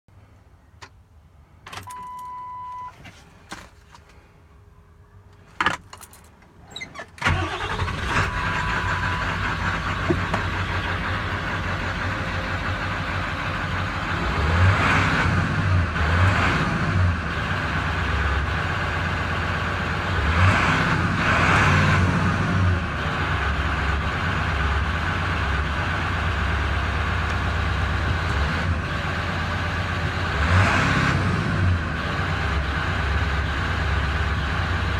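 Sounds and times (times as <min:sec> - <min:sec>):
diesel engine idling roughly: 0:07.2 - 0:14.4.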